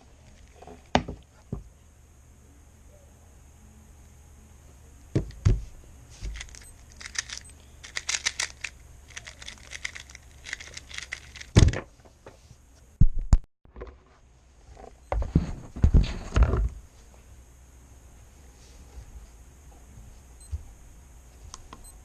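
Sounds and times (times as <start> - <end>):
speed cube clicking and rattling: 6.3 - 11.6.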